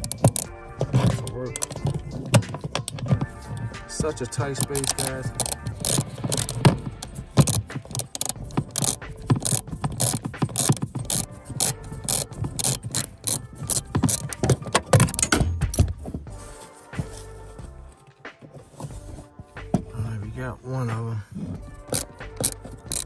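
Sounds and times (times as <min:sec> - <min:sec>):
ratchet clicking: 0:00.0 - 0:16.0, 0:21.6 - 0:23.0.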